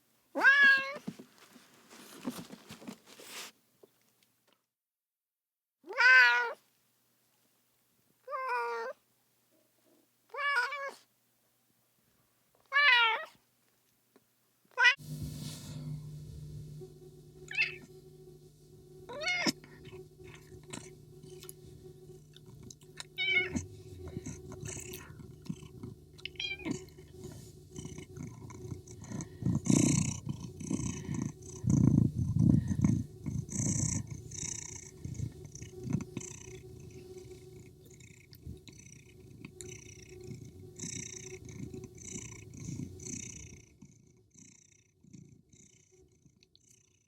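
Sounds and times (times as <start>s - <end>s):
cat meowing: 0.4s - 1.0s, 5.9s - 6.6s, 8.3s - 9.0s, 10.3s - 11.0s, 12.7s - 13.4s, 23.1s - 23.6s, 26.2s - 27.0s
rough low cat sounds: 14.8s - 43.7s
cat purring: 15.0s - 47.0s.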